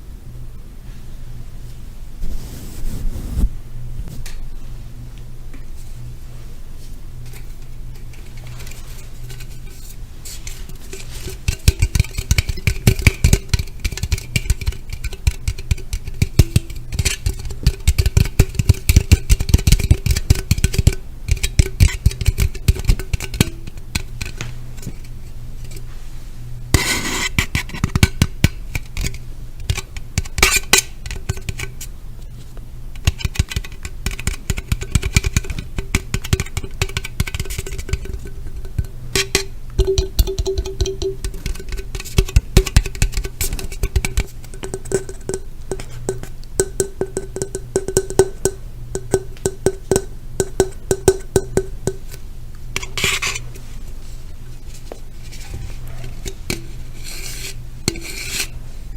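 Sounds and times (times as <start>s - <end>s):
faint steady hum: 0.0s - 58.9s
short rustling: 1.7s - 4.4s
tapping and scratching on objects: 7.2s - 25.9s, 26.7s - 53.7s, 54.6s - 58.6s.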